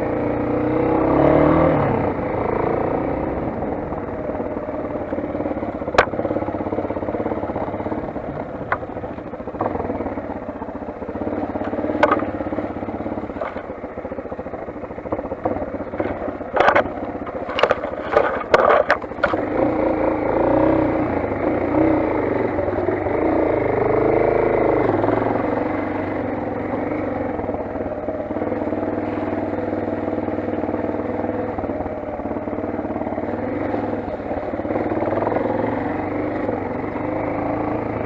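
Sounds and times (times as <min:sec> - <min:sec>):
motorcycle engine running: 0:00.0 - 0:38.0
sharp knocks and clatter: 0:11.6 - 0:12.3, 0:15.4 - 0:19.5.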